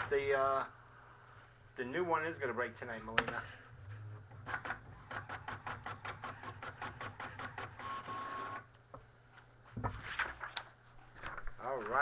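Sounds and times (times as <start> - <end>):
printer whirring: 4.3 - 8.7.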